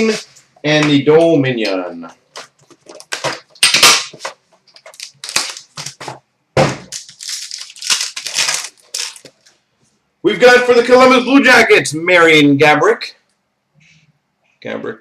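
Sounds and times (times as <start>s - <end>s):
plastic wrapping crinkling: 2.4s - 6.2s, 6.9s - 9.6s.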